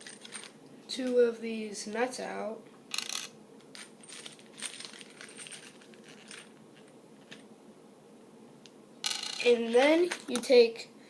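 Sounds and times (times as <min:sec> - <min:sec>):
metal nuts and screws clinking: 0:00.0 - 0:00.6, 0:02.9 - 0:07.4.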